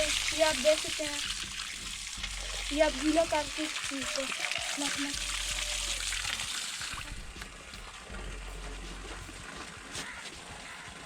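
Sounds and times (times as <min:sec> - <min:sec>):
low steady hum: 0:07.0 - 0:09.8.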